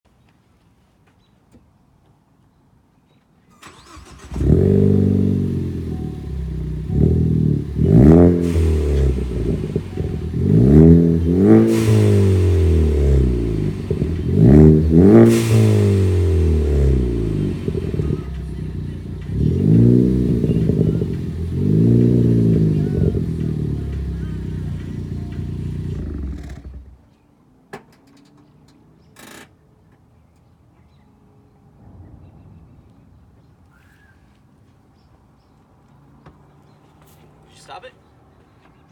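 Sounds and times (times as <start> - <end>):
car engine starting and revving: 3.6 - 27.0.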